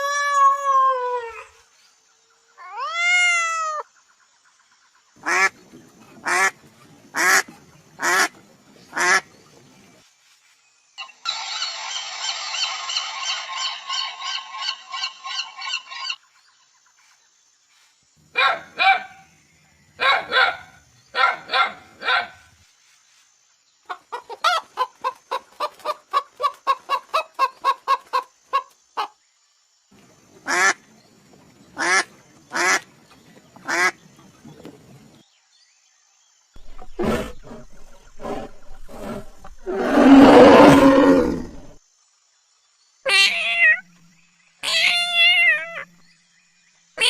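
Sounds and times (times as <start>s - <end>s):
loud harsh animal cry: 2.6s - 3.8s, 11.2s - 16.2s, 36.6s - 41.8s, 43.1s - 43.9s, 44.6s - 45.9s
animal calls: 11.0s - 16.2s, 36.6s - 41.8s.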